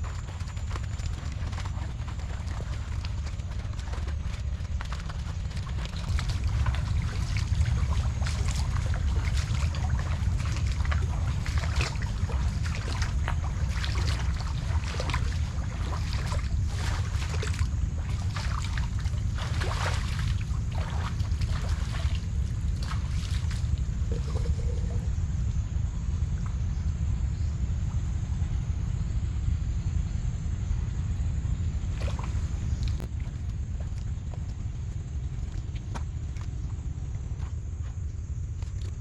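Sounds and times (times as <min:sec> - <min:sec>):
wind buffeting microphone: 0:00.0 - 0:39.0
water splashing and knocking: 0:00.1 - 0:25.0.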